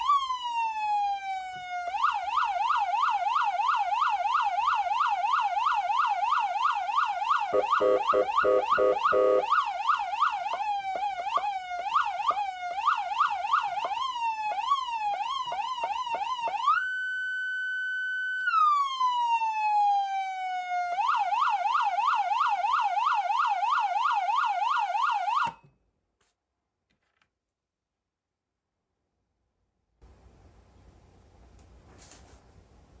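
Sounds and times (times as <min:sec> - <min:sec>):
electronic siren: 0:00.0 - 0:25.6.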